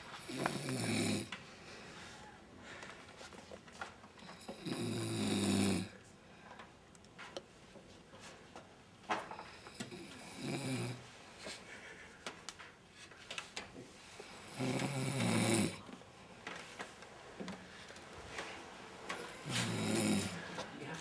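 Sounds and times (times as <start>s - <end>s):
man snoring: 0.2s - 1.4s, 4.5s - 6.0s, 9.9s - 11.0s, 14.3s - 15.8s, 19.3s - 20.6s
faint breaths: 0.4s - 3.5s, 15.7s - 21.0s.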